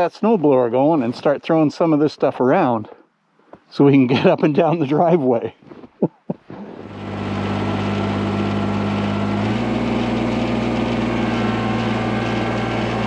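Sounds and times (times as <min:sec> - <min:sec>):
snowblower engine running: 0:06.5 - 0:13.0.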